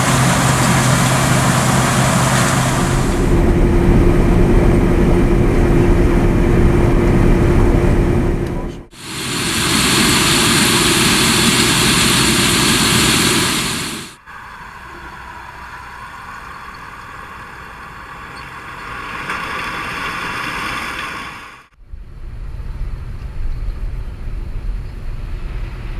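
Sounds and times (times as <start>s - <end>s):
combine harvester running: 0.0s - 14.2s.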